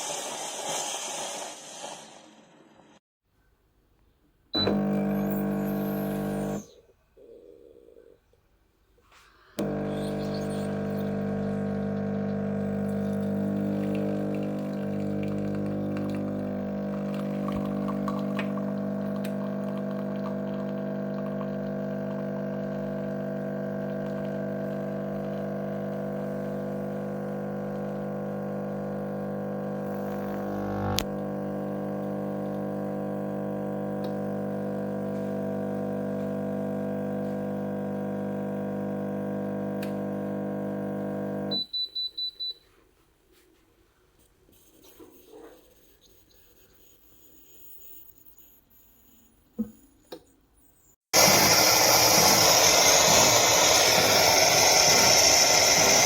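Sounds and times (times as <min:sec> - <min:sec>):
espresso machine pump humming: 0:04.6 - 0:06.7, 0:09.6 - 0:41.6, 0:51.2 - 0:56.0.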